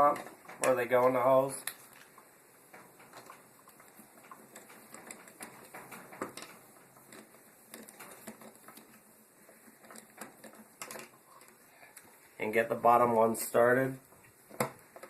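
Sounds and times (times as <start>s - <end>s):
metal strap and screws clicking: 1.6s - 12.1s.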